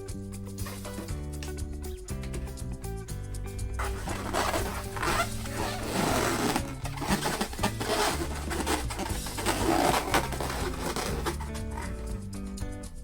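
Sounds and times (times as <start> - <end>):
background music with bass line: 0.0 - 13.0
balloons rubbing and squeaking: 3.8 - 12.4.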